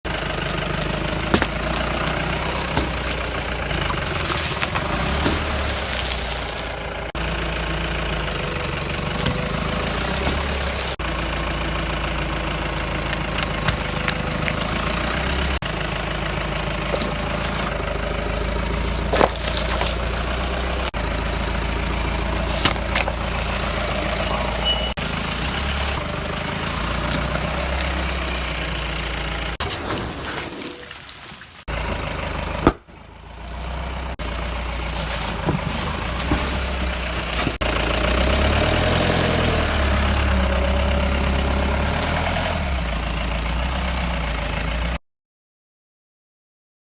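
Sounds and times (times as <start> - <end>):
car engine running: 0.0 - 30.3, 31.6 - 45.0
plastic buckets cracking: 0.1 - 7.2, 8.2 - 11.1, 12.7 - 31.8, 32.5 - 33.1, 34.2 - 38.5.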